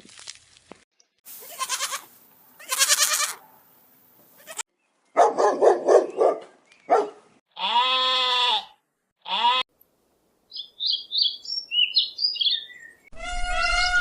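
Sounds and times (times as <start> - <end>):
goat bleating: 1.4 - 3.4, 4.4 - 4.7, 7.6 - 9.7, 13.2 - 14.0.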